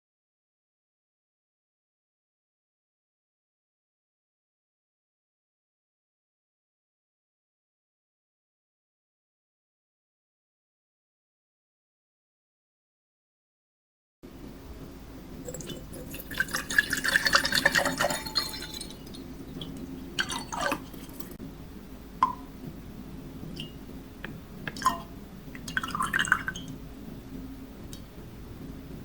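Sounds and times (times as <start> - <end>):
steady low hum: 14.2 - 29.0
liquid splashing: 15.4 - 21.4.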